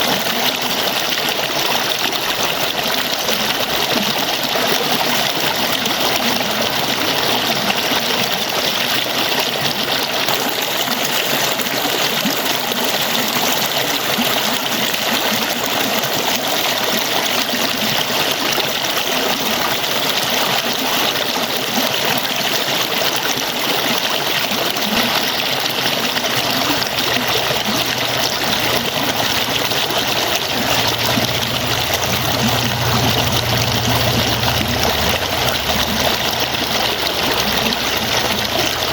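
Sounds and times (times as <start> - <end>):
water falling and splashing: 0.0 - 38.9
low rumble: 30.4 - 38.9.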